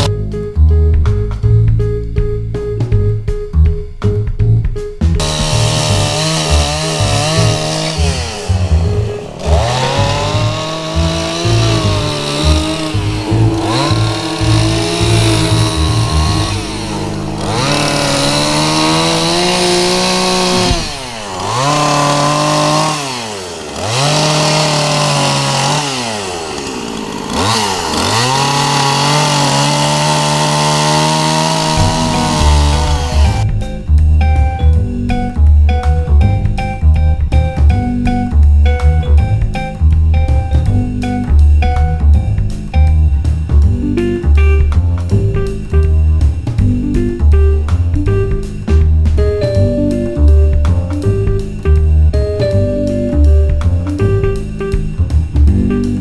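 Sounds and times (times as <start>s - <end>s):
chainsaw cutting a log: 5.2s - 33.5s.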